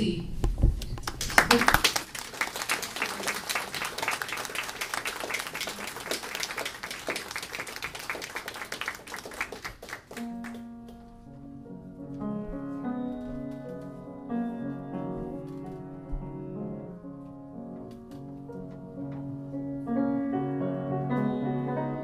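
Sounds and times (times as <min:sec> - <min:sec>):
audience applause: 0:01.0 - 0:10.7.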